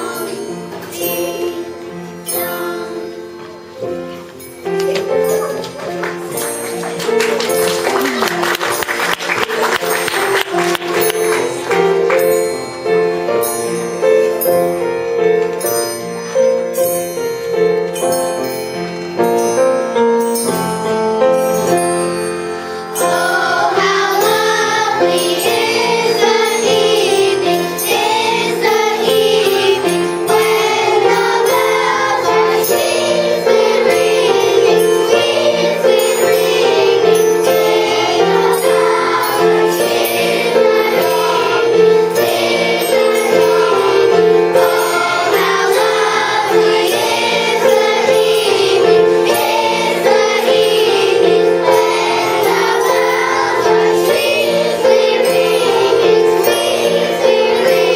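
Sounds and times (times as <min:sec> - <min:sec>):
children's choir singing: 0:00.0 - 0:15.7, 0:21.5 - 0:57.9
held accompanying notes: 0:00.0 - 0:57.9.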